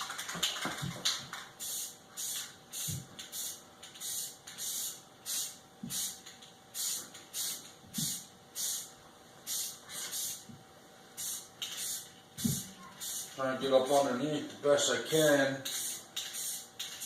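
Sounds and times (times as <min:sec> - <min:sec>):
spray paint can hissing: 0:01.6 - 0:08.9, 0:09.5 - 0:10.4, 0:11.2 - 0:13.4, 0:15.6 - 0:17.0.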